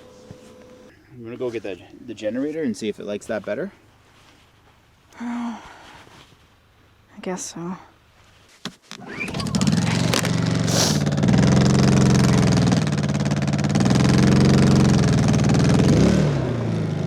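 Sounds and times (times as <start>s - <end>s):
gas generator engine running: 8.7s - 11.4s.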